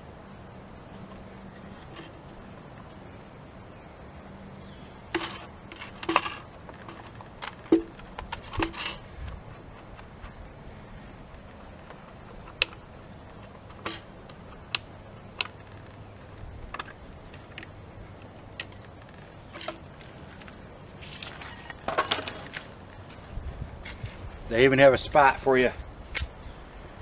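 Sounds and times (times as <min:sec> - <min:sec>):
sharp clicks and light knocks: 0:05.1 - 0:10.5, 0:11.3 - 0:20.6
rustling and clicking: 0:05.1 - 0:10.6, 0:11.2 - 0:24.2.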